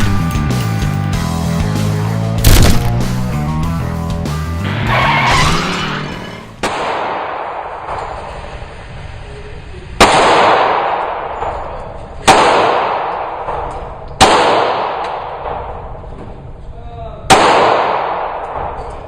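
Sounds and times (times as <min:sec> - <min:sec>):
music: 0:00.0 - 0:06.6
pistol shots ringing: 0:02.4 - 0:03.3, 0:10.0 - 0:16.0, 0:17.3 - 0:19.0.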